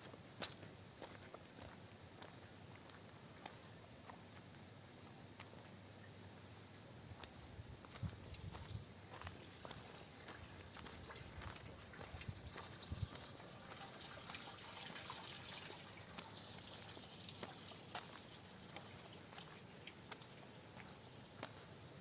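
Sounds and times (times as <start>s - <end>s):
raindrops ticking close by: 7.2s - 22.0s.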